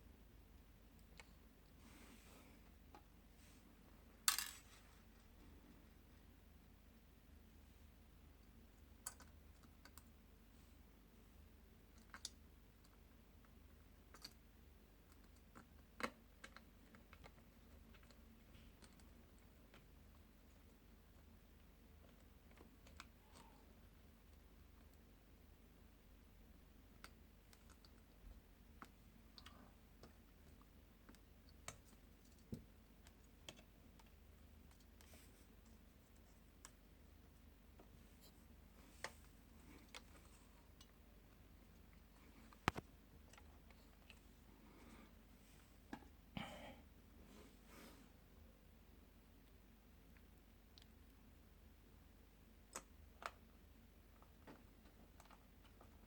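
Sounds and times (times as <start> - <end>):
low steady hum: 0.0 - 56.0
small clicks and taps of parts: 0.9 - 1.8, 8.4 - 10.2, 11.9 - 21.3, 21.9 - 23.5, 26.9 - 36.8, 41.8 - 44.2, 52.7 - 53.5.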